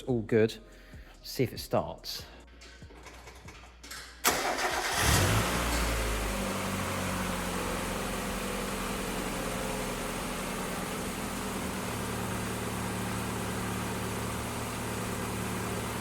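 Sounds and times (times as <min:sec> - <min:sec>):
car engine idling: 0:04.2 - 0:16.0.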